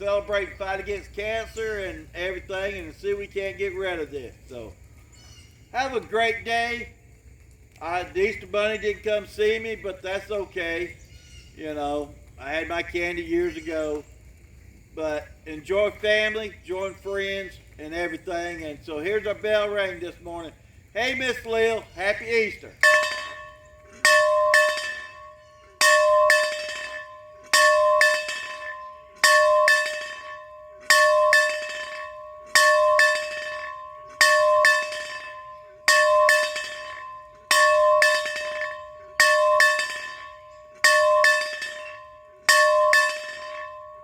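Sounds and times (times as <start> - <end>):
metal bell ringing: 22.8 - 44.0.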